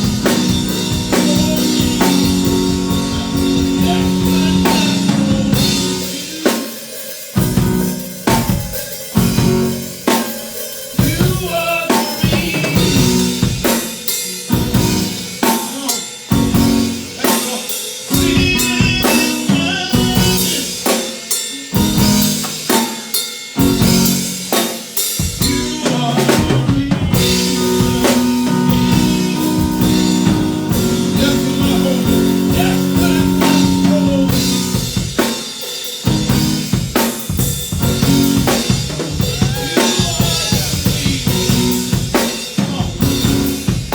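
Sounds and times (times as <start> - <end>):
keyboard held chords: 0.0 - 15.5, 25.3 - 35.2
drum kit beat: 0.0 - 43.9
live band playing: 0.0 - 43.9.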